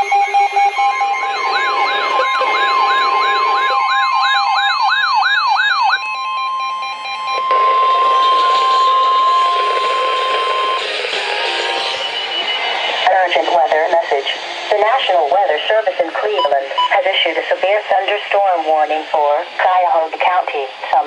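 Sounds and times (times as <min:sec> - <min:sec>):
electronic siren wail: 0:00.0 - 0:13.9
steady warning alarm tone: 0:00.0 - 0:21.0
radio static hiss: 0:07.5 - 0:21.0.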